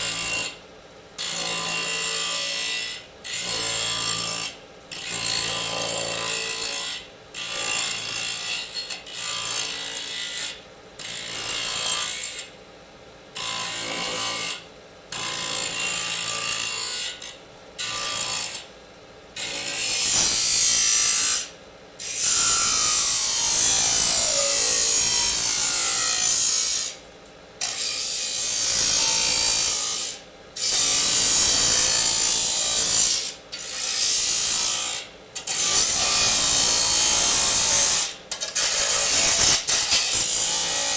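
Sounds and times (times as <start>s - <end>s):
disk saw cutting metal: 27.6s - 40.9s.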